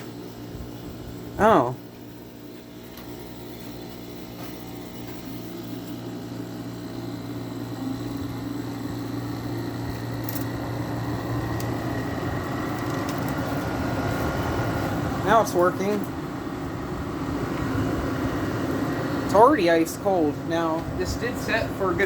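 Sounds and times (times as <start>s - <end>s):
air conditioner fan motor hum: 0.0s - 22.0s.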